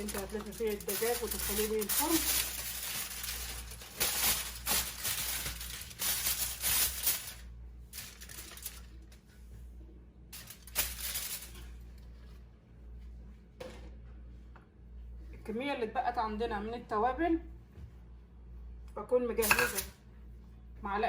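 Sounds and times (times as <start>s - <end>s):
aluminium foil crinkling: 0.0s - 9.2s, 10.4s - 12.3s, 19.4s - 19.9s.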